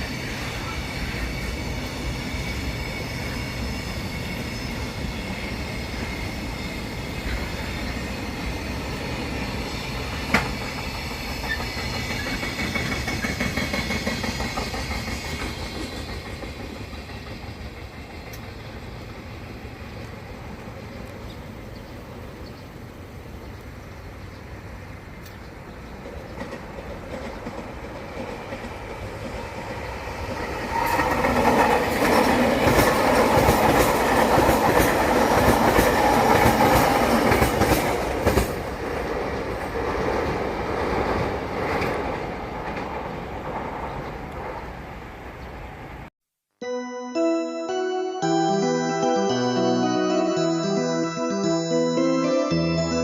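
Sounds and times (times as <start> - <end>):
train wheels clattering on rails: 0.0 - 21.5, 25.1 - 44.7
high ringing from rails: 46.6 - 53.0.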